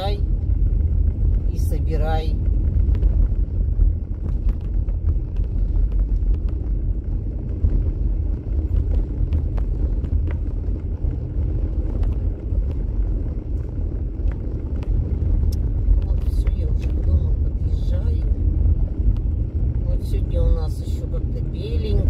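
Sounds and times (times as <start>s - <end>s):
car engine and tyre noise: 0.0s - 22.0s.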